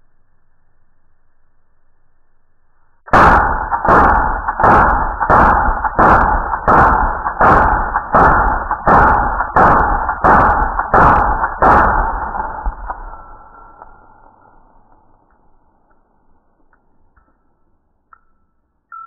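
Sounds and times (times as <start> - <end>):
gunshots: 3.1 - 14.7.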